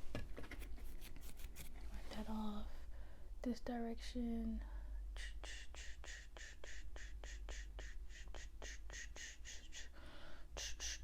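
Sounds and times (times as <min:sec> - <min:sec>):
razor shaving scrapes: 0:00.8 - 0:01.7.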